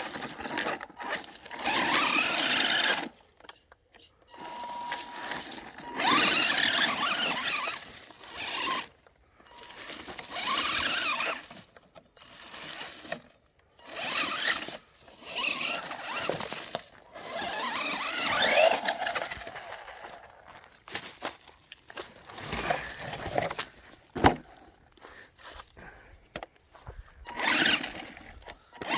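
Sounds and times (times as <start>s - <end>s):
electric rc car motor whine: 0.0s - 3.2s, 4.3s - 20.5s, 27.2s - 28.9s.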